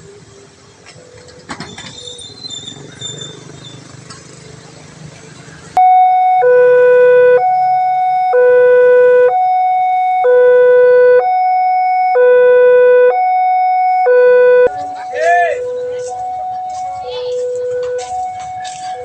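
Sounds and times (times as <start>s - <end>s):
level crossing two-tone alarm: 5.8s - 19.0s.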